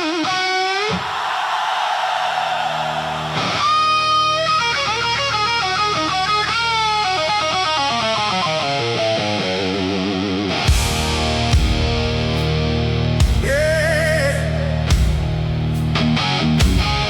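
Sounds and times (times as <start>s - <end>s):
hard rock backing: 2.5s - 17.0s
distorted electric guitar solo: 2.8s - 13.2s.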